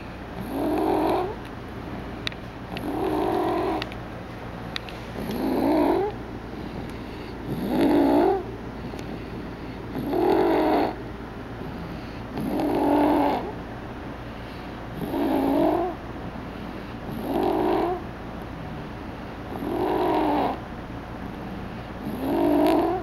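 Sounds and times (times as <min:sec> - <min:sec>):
person snoring: 0:07.4 - 0:08.4.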